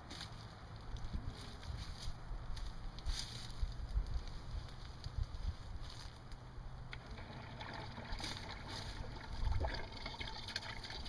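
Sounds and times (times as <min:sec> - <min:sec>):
wind on the microphone: 0:01.1 - 0:05.9
pump hum: 0:06.2 - 0:11.0
water splashing into a bucket: 0:06.9 - 0:11.0.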